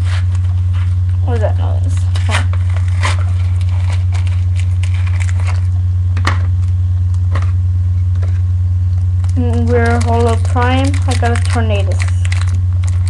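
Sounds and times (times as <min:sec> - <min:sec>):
loud low hum: 0:00.0 - 0:13.0
faint clicks and crackles: 0:08.1 - 0:13.0.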